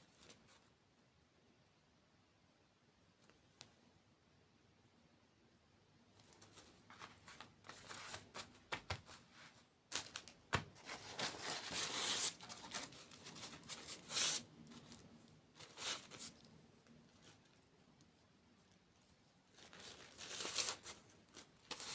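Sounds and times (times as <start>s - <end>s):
food packaging crinkling and tearing: 19.5s - 21.9s.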